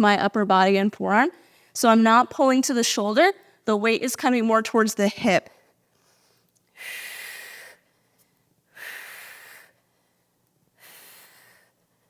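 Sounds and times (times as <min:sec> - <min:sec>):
woman breathing through mouth: 0:08.7 - 0:09.9, 0:10.8 - 0:11.8.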